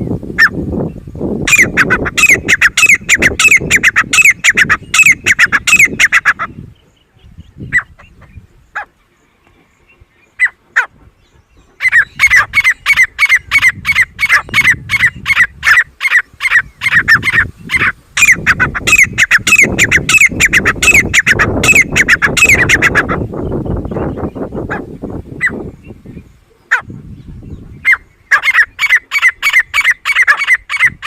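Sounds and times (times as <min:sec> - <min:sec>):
francolin calling harshly: 0:01.4 - 0:06.6, 0:10.3 - 0:10.9, 0:11.8 - 0:24.8, 0:27.8 - 0:31.0.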